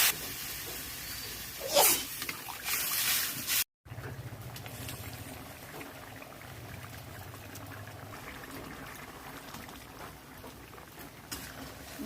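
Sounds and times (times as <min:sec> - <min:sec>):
curry bubbling in a pan: 0:03.9 - 0:12.0.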